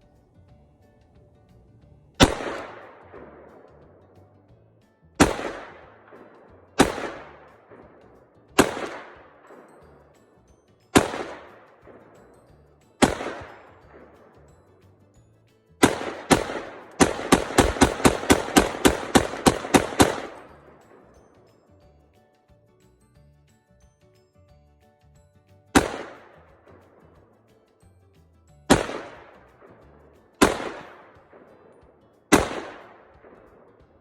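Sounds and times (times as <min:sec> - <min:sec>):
rifle shots with echo: 0:02.2 - 0:03.9, 0:05.2 - 0:10.1, 0:10.9 - 0:12.2, 0:13.0 - 0:14.4, 0:15.8 - 0:21.1, 0:25.7 - 0:26.9, 0:28.7 - 0:33.8.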